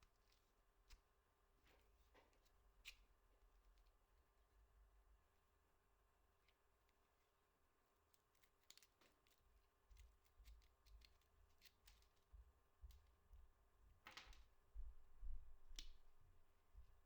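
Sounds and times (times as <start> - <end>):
small faint clicks: 15.7 - 16.0.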